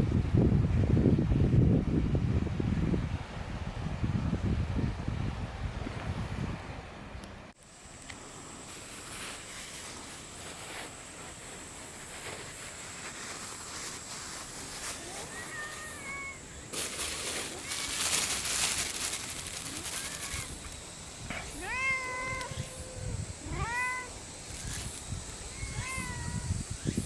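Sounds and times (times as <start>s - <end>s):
cat meowing faintly: 14.8s - 16.4s, 19.6s - 20.7s, 21.3s - 24.2s, 25.4s - 26.6s.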